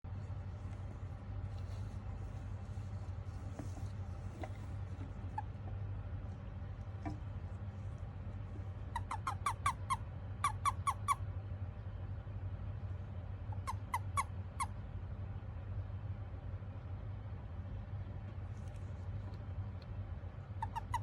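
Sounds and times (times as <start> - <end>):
faint low hum: 0.0 - 21.0
toad chirping: 8.9 - 11.2, 13.5 - 14.7, 20.5 - 21.0.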